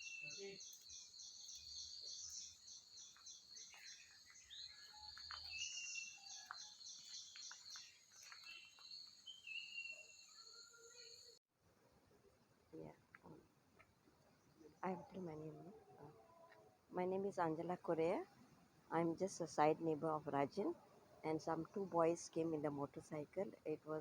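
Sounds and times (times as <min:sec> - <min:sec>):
bird chirps: 0:00.0 - 0:11.4
insects chirping: 0:00.0 - 0:11.4.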